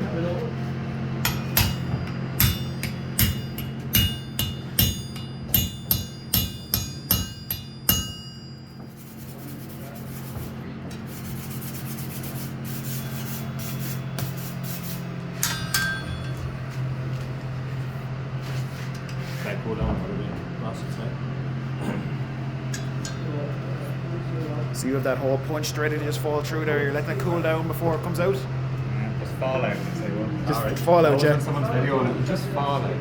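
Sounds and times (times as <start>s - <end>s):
steady low hum: 0.0s - 33.0s
hammer striking steel on anvil: 1.2s - 9.1s, 15.4s - 16.4s, 22.7s - 23.2s.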